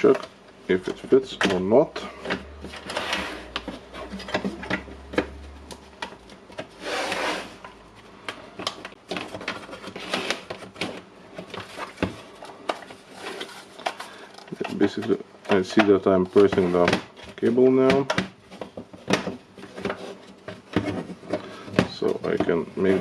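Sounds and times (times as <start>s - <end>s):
cord rubbing scrapes: 2.1s - 4.7s, 6.7s - 7.7s, 9.7s - 10.6s.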